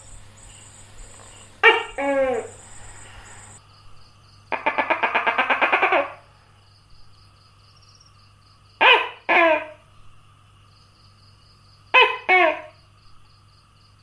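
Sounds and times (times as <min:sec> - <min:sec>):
gecko calling: 0:00.0 - 0:03.6
faint insect chirping: 0:00.0 - 0:04.6, 0:06.2 - 0:14.0.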